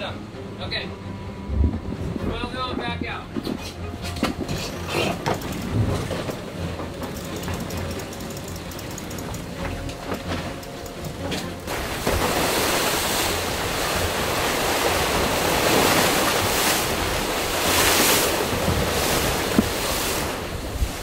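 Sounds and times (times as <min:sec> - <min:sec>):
water rushing along hull: 0:00.0 - 0:21.0
wind buffeting microphone: 0:01.4 - 0:04.6.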